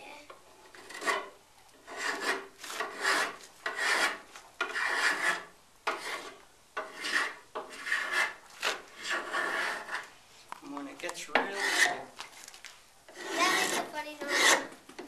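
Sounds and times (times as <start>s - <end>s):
hand tool rasping wood: 0.7s - 10.1s, 11.3s - 12.1s, 13.1s - 14.7s.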